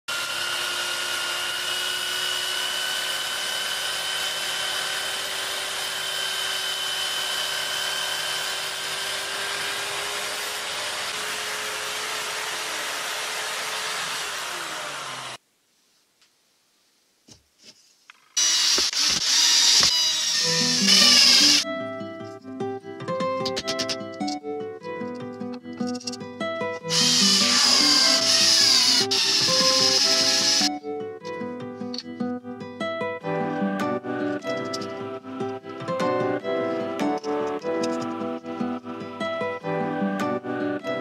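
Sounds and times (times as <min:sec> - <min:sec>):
electric drill motor whining: 0:00.1 - 0:15.4, 0:18.4 - 0:21.6, 0:26.9 - 0:30.7.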